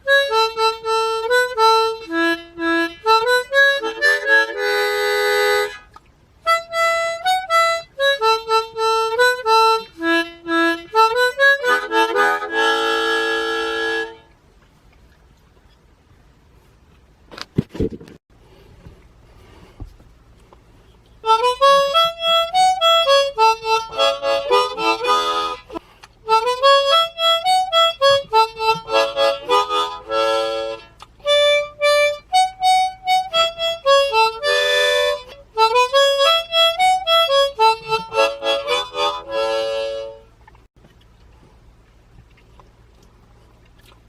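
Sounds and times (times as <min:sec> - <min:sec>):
harmonica folk melody: 0:00.0 - 0:14.4, 0:21.2 - 0:40.5.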